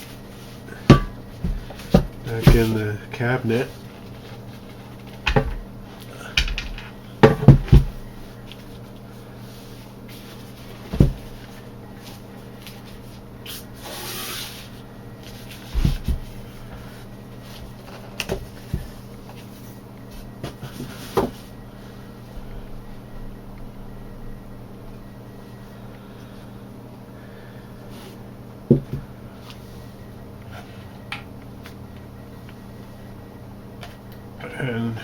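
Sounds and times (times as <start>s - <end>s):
speaker driver knocks and bumps: 0.9s - 2.8s, 6.4s - 8.0s, 10.9s - 11.2s, 28.7s - 29.1s.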